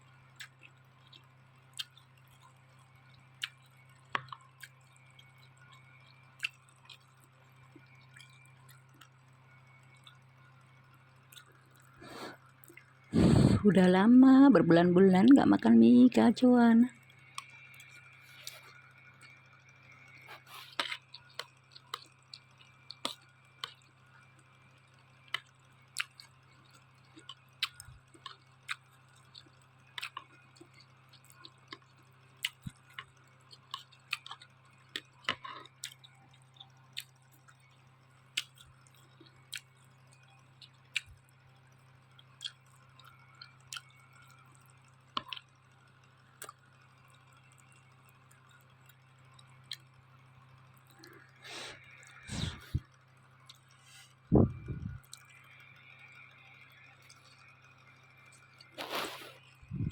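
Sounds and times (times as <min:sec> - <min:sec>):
person chewing noodles: 0:01.8 - 0:02.6, 0:03.3 - 0:05.6, 0:06.3 - 0:08.3, 0:11.3 - 0:13.6, 0:17.3 - 0:19.4, 0:20.1 - 0:23.9, 0:25.3 - 0:37.2, 0:38.3 - 0:39.9, 0:40.6 - 0:41.2, 0:42.2 - 0:44.6, 0:45.2 - 0:45.5, 0:46.4 - 0:46.6, 0:50.9 - 0:52.8, 0:58.6 - 0:59.9
steady low hum: 0:02.9 - 0:33.1, 0:47.8 - 0:59.9.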